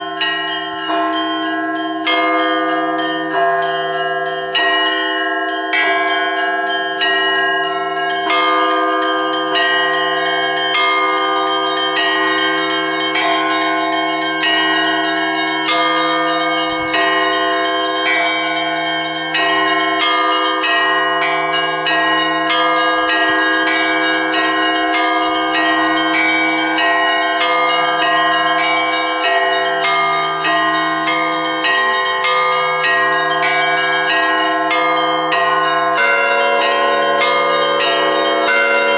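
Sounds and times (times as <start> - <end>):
small bells struck rhythmically: 0.0 - 38.9
deep bells humming: 8.0 - 38.9.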